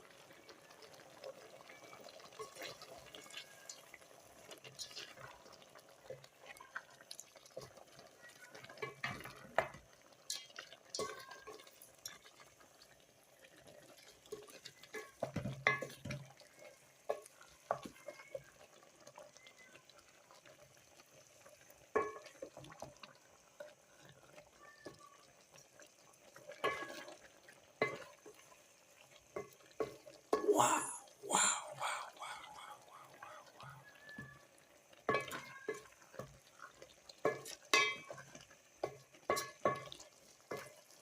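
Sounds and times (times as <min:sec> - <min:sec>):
utensil scraping and knocking in pot: 0:37.2 - 0:38.2.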